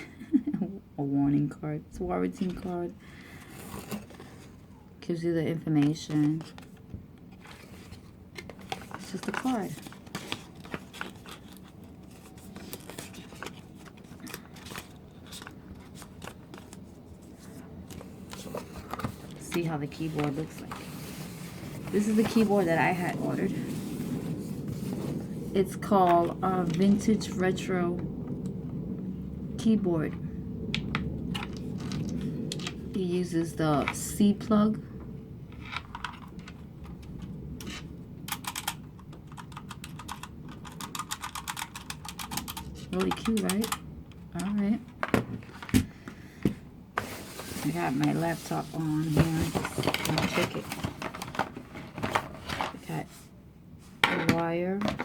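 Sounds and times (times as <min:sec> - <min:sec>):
packaging clicks and rustles: 0:05.8 - 0:25.3, 0:30.8 - 0:32.8, 0:35.6 - 0:43.8, 0:47.0 - 0:53.1
mechanical keyboard keys clacking: 0:38.3 - 0:43.8.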